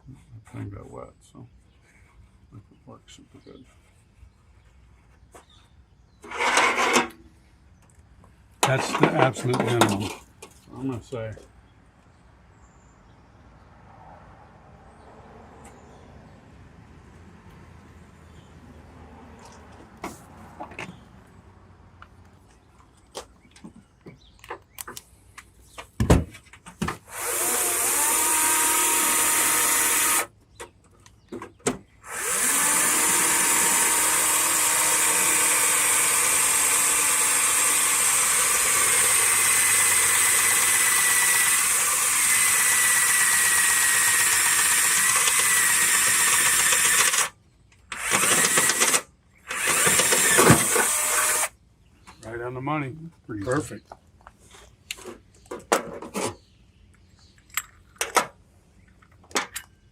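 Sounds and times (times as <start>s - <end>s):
power drill running: 27.1s - 30.3s, 32.0s - 51.5s.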